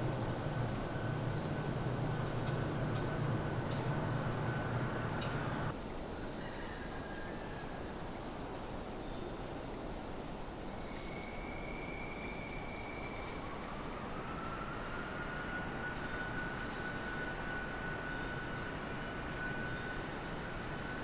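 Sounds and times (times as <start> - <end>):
low hum: 0.0 - 5.7
outdoor background hush: 0.0 - 5.7.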